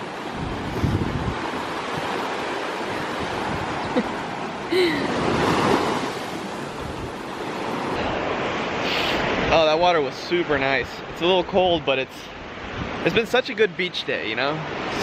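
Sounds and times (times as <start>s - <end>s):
wind buffeting microphone: 0.0s - 4.3s, 5.1s - 8.4s, 12.4s - 13.2s
ocean surf washing onto beach: 0.0s - 15.0s.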